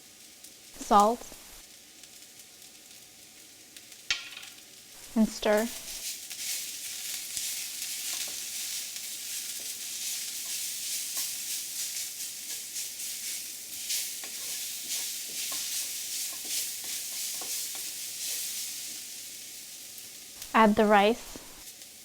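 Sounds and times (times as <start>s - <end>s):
onions sizzling in oil: 0.0s - 22.0s
utensil scraping wok: 5.0s - 19.9s.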